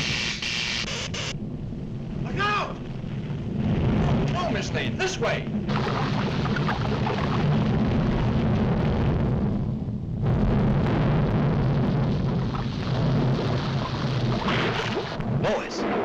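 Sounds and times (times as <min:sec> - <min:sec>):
cartoon volcanic eruption rumble: 0:00.0 - 0:16.0.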